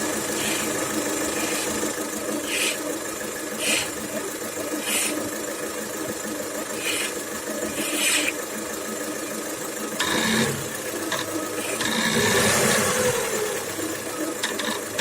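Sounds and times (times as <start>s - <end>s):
car engine idling: 0.0s - 15.0s
short hissing bursts: 0.3s - 2.9s, 3.5s - 4.0s, 4.8s - 5.3s, 6.7s - 8.4s
belt tensioner rattling: 14.4s - 15.0s.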